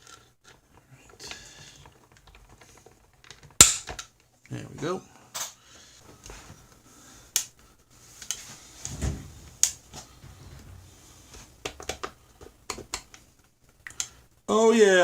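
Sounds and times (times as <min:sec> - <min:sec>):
plastic clicks and taps: 0:11.6 - 0:13.2.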